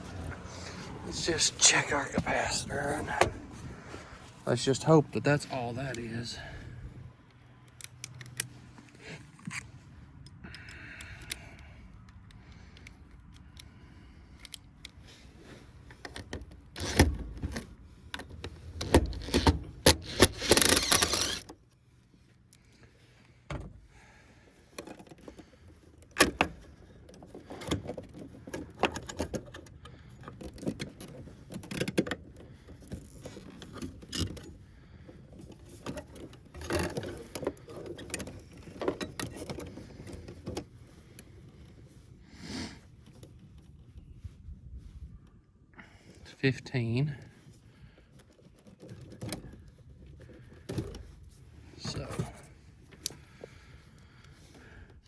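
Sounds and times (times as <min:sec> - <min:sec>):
tools clicking and rattling: 0:07.3 - 0:09.6, 0:15.8 - 0:21.7, 0:24.7 - 0:42.0.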